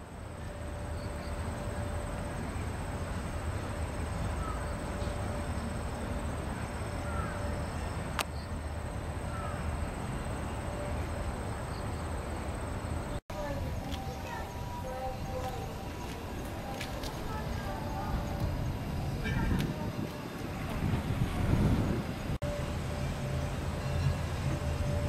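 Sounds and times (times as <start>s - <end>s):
insects trilling: 0.5s - 19.9s
steady low rumble: 12.4s - 25.0s.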